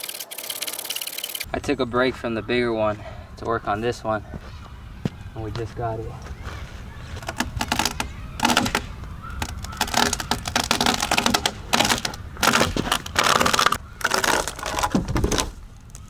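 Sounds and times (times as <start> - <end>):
dry brush crackling and snapping: 3.3 - 16.0.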